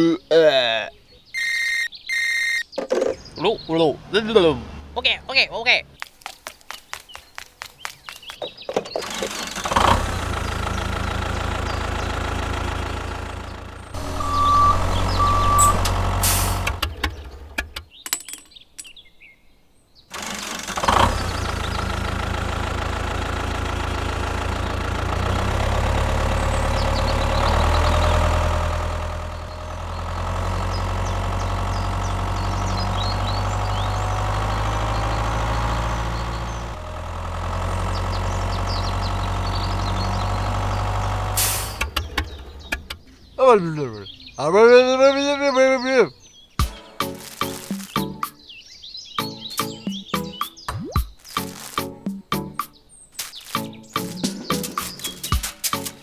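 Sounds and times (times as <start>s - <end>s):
short beeps: 1.4s - 2.7s, 14.0s - 16.0s
tractor engine running: 2.6s - 18.6s, 20.1s - 56.0s.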